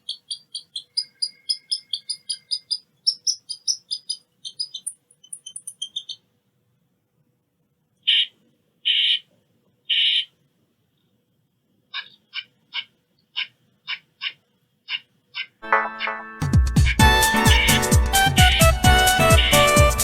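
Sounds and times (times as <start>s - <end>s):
squirrel alarm chips: 0.0s - 6.2s, 16.8s - 20.0s
squirrel harsh calls: 0.0s - 6.2s, 8.1s - 8.3s, 8.9s - 9.3s, 9.9s - 10.3s, 16.8s - 20.0s.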